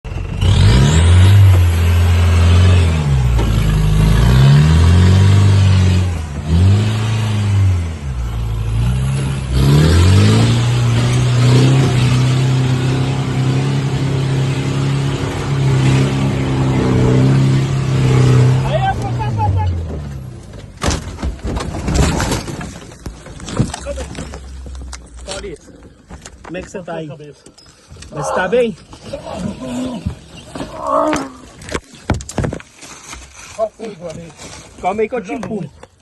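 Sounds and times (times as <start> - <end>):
off-road vehicle engine revving: 0.1 - 20.5.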